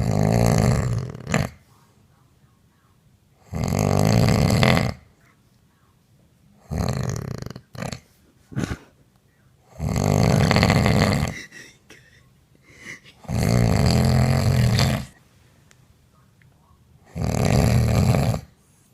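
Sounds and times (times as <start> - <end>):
woman snoring loudly: 0.0 - 1.6, 3.4 - 5.1, 6.6 - 8.0, 9.7 - 11.5, 13.2 - 15.2, 17.1 - 18.5
short snorts: 6.6 - 9.0, 13.2 - 15.2, 17.1 - 18.6.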